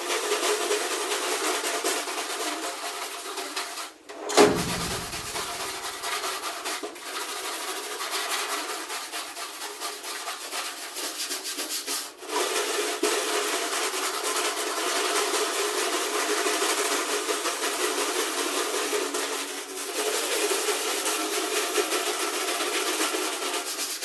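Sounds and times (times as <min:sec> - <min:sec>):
hand scrubbing sheet metal: 0:04.1 - 0:06.1.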